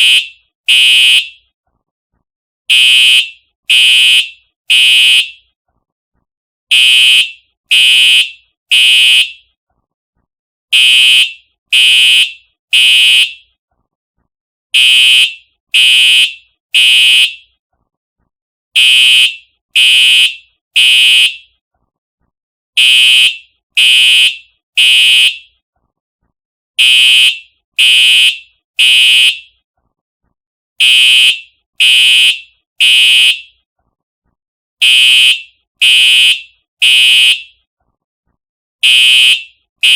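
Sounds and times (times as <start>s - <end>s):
fire alarm horn blasts: 0.0s - 1.5s, 2.7s - 5.4s, 6.7s - 9.4s, 10.7s - 13.5s, 14.8s - 17.5s, 18.8s - 21.5s, 22.8s - 25.6s, 26.8s - 29.6s, 30.8s - 33.6s, 34.8s - 37.6s, 38.8s - 39.9s.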